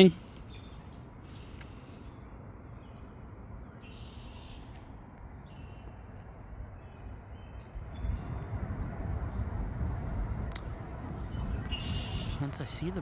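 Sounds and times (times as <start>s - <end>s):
songbirds chirping: 0.0s - 13.0s.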